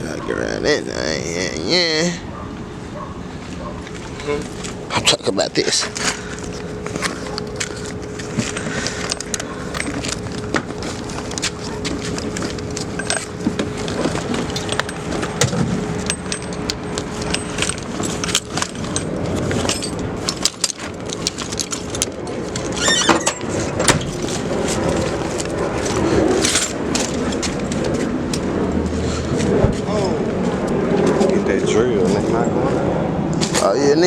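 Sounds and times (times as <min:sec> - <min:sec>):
metal tools clinking: 0:03.7 - 0:28.4
metal clanks: 0:05.7 - 0:24.3.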